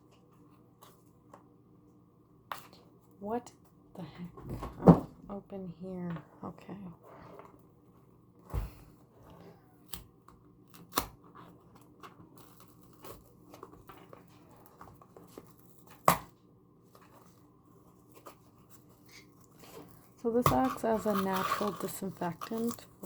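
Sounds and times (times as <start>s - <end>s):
packaging tearing and crinkling: 10.7s - 16.3s, 18.0s - 23.0s.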